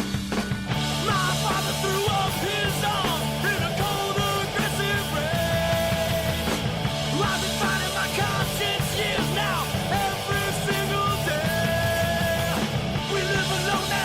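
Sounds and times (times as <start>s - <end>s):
drums: 0.0s - 14.0s
punk rock band playing: 0.0s - 14.0s
sung vocals: 0.8s - 14.0s.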